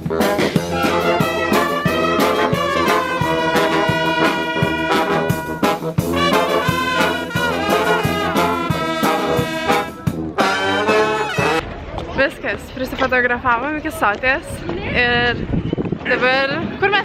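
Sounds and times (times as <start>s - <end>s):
upbeat swing jazz brass music: 0.0s - 11.6s.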